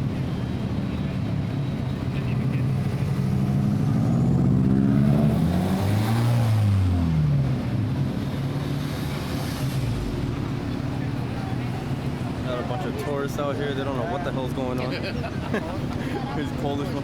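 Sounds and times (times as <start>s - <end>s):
car engine revving: 1.9s - 12.9s.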